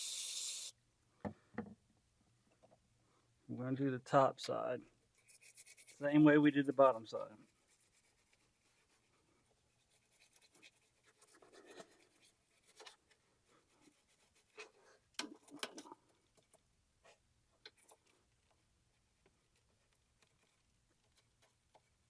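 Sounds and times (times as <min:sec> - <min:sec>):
faint scrubbing and rubbing: 0:05.2 - 0:15.1.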